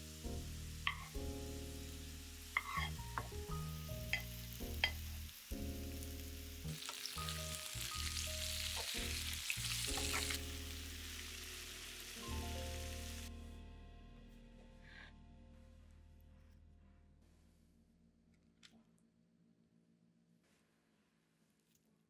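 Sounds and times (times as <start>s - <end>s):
food sizzling in oil: 0.0s - 13.3s
background music: 0.0s - 17.7s.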